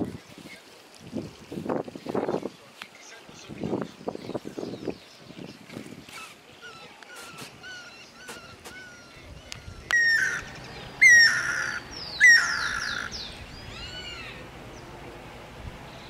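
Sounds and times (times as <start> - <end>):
harsh rasping bird calls: 6.0 - 15.0.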